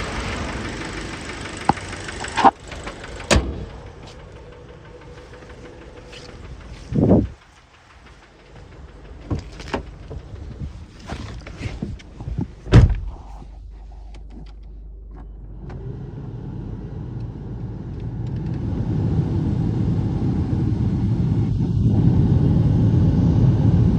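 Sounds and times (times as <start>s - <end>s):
car engine running: 0.0s - 23.9s
sharp clunks: 1.6s - 4.3s, 8.0s - 13.2s.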